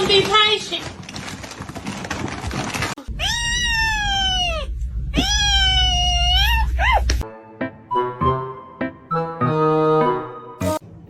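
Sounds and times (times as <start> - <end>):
cat meowing: 3.1 - 7.2.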